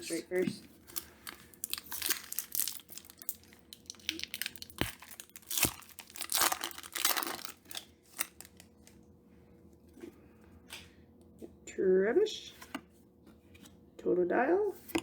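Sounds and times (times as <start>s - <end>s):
foil wrapper crinkling and tearing: 0.7s - 9.0s.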